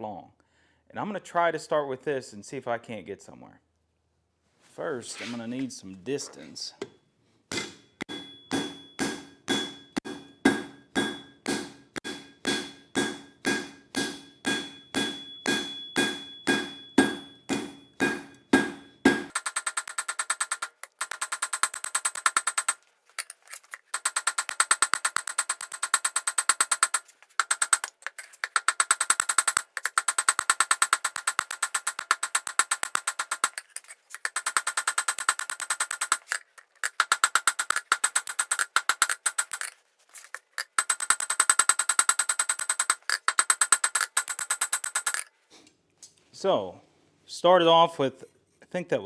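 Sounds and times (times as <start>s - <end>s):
hammer blows on an anvil: 7.5s - 22.8s, 24.0s - 39.7s.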